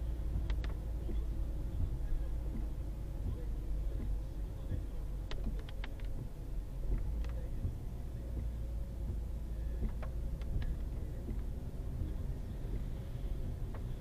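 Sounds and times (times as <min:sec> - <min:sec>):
engine and road rumble: 0:00.0 - 0:14.0
faint steady hum: 0:00.0 - 0:14.0
light clicks: 0:05.2 - 0:06.3.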